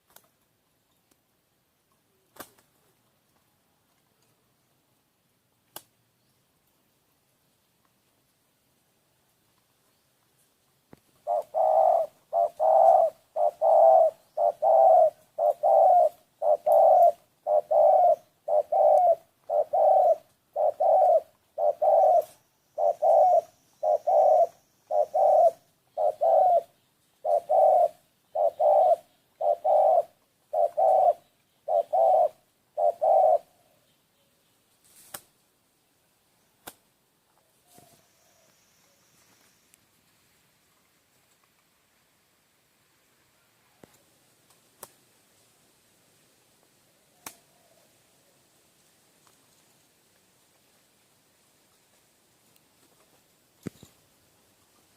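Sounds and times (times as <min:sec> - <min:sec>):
faint clicks: 0:00.0 - 0:04.4, 0:05.6 - 0:06.0, 0:47.2 - 0:47.4
dove-like bird cooing: 0:11.2 - 0:34.4, 0:37.4 - 0:39.0, 0:47.0 - 0:48.4.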